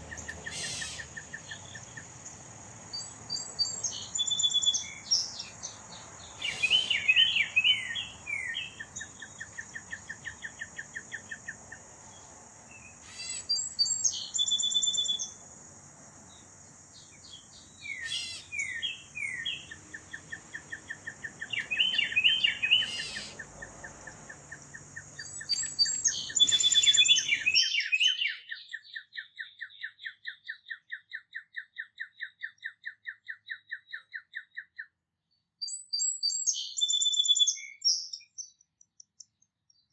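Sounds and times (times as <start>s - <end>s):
rapid bird trill: 0.0s - 27.6s
songbirds chirping: 0.0s - 27.6s.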